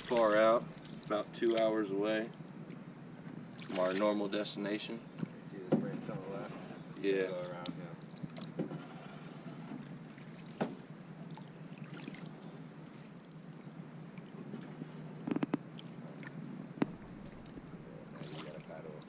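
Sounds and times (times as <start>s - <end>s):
boat paddling on water: 0.0s - 19.0s
steady low hum: 0.0s - 19.0s
sharp knocks: 5.2s - 6.2s.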